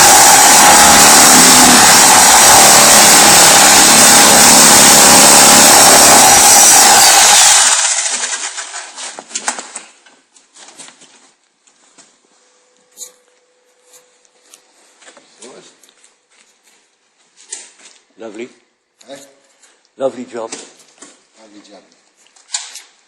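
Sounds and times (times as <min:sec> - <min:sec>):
power tool running: 0:00.0 - 0:08.7.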